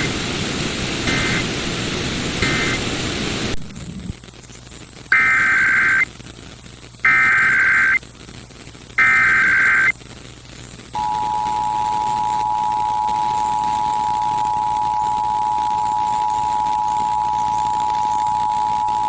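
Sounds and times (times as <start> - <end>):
hissing radio static: 0.0 - 19.0
harsh buzzing data tone: 1.1 - 1.4, 2.4 - 2.8, 5.1 - 6.1, 7.0 - 8.1, 9.0 - 10.0, 11.0 - 19.0
two-tone attention signal: 5.2 - 6.0, 7.1 - 8.0, 9.0 - 9.9, 11.0 - 19.0.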